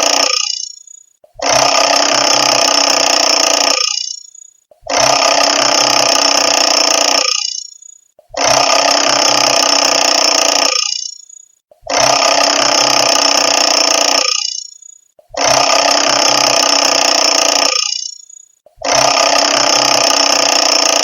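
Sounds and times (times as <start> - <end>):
alarm clock bell ringing: 0.0 - 1.1, 3.6 - 4.6, 6.7 - 8.0, 10.7 - 11.5, 13.2 - 15.0, 17.1 - 18.5.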